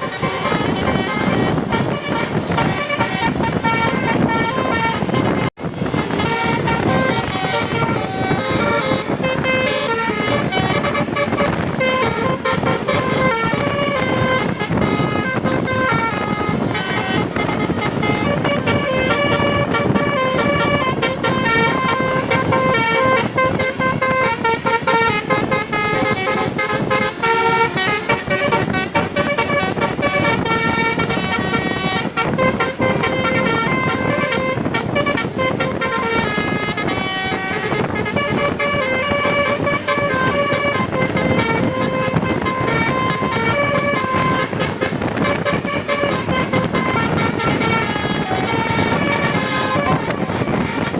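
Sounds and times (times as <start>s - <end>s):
multi-tone bus horn melody: 0.0s - 50.9s
steady engine rumble: 0.0s - 50.9s.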